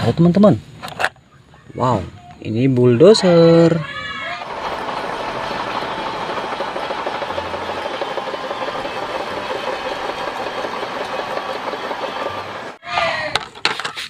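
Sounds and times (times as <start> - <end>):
toy vehicle motor rattling: 4.4 - 12.8.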